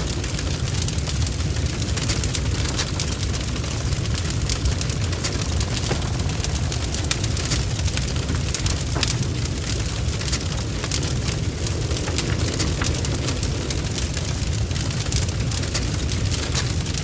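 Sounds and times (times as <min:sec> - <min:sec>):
fire crackling and popping: 0:00.0 - 0:17.0
roar of flames: 0:00.0 - 0:17.0.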